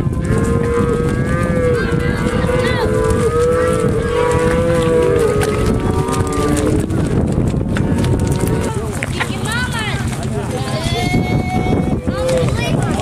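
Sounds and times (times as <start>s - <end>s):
cattle mooing: 0.0s - 8.8s
low rumble: 0.0s - 13.0s.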